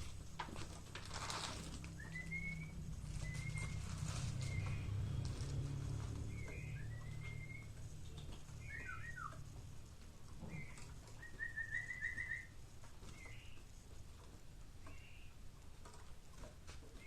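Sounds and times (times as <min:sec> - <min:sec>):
low steady hum: 0:00.0 - 0:17.0
songbird chirping and whistling: 0:01.9 - 0:09.6, 0:10.4 - 0:13.7, 0:14.8 - 0:15.3.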